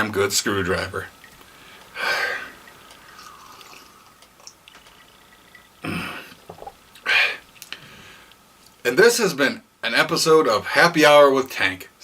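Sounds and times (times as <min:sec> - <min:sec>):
person sipping from a glass: 0:01.7 - 0:07.8.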